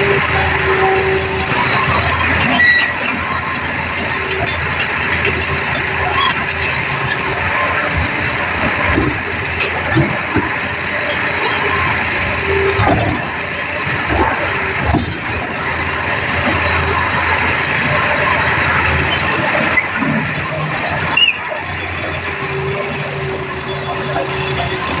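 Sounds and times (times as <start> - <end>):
high squeal: 0.0 - 4.8, 20.6 - 25.0
excavator diesel engine running: 0.0 - 25.0.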